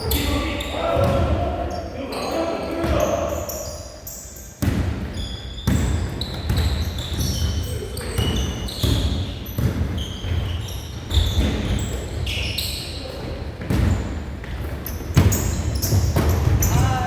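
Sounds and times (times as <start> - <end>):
sneakers squeaking on floor: 0.0 - 17.0
basketball bouncing: 4.6 - 10.5, 13.6 - 17.0.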